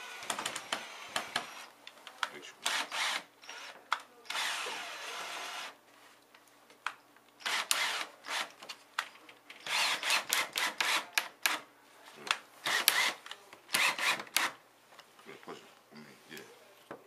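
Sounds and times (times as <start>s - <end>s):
power drill driving screw: 0.0s - 1.7s, 2.6s - 5.8s, 7.4s - 8.6s, 9.6s - 11.7s, 12.6s - 14.6s.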